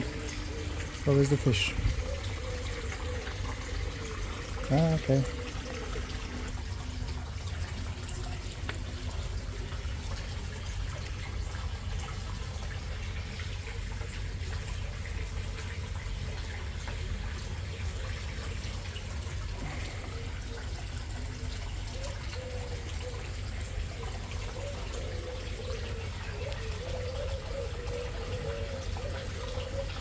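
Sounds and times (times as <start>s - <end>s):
water trickling into a pond: 0.0s - 30.0s.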